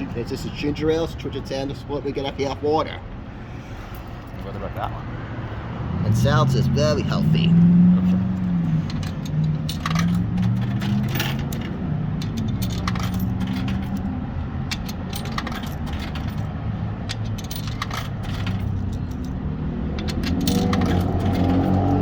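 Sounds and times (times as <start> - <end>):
coins clinking in machine: 8.9 - 22.0.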